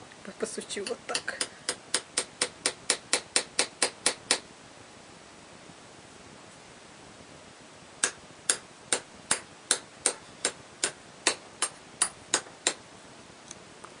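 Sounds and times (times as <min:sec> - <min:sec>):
hammer tapping: 0:00.8 - 0:04.4, 0:08.0 - 0:12.8.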